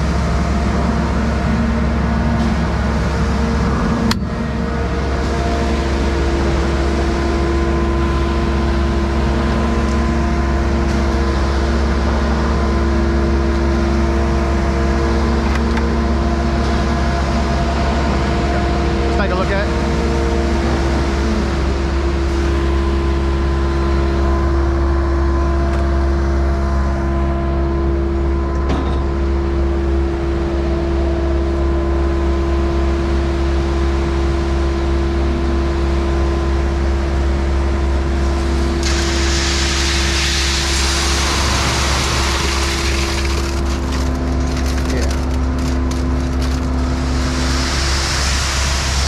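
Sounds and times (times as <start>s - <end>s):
heavy equipment engine running: 0.0s - 49.0s
hiss: 38.8s - 43.1s, 47.0s - 49.0s.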